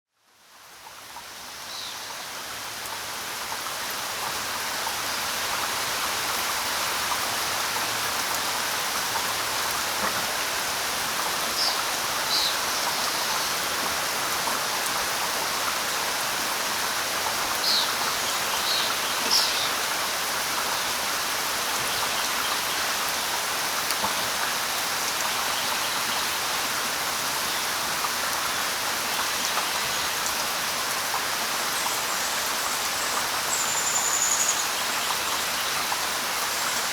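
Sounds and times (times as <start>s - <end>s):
steady rain hiss: 0.2s - 36.9s.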